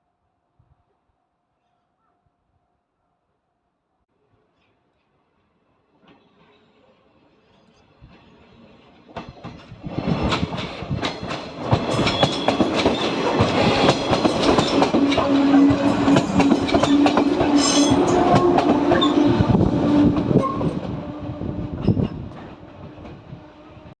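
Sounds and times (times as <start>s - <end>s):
train wheels clattering over rails: 8.0s - 21.0s.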